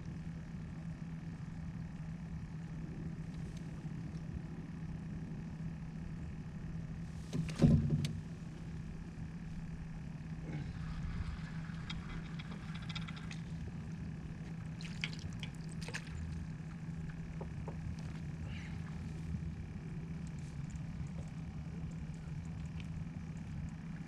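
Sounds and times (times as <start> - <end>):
boat motor humming: 0.0 - 24.0
water lapping against hull: 7.1 - 24.0
hard knock on boat: 7.3 - 8.4
light clicks and rattles: 10.8 - 16.3.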